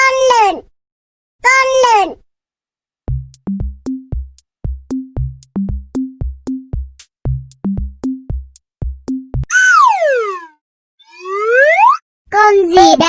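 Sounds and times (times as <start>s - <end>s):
electronic drum beat: 3.1s - 9.5s.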